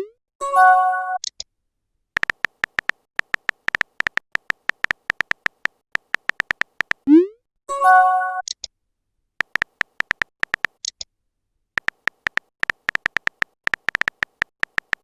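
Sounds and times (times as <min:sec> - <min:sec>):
electronic typing tick-beeps: 0:02.2 - 0:07.2, 0:09.4 - 0:11.0, 0:11.8 - 0:15.0.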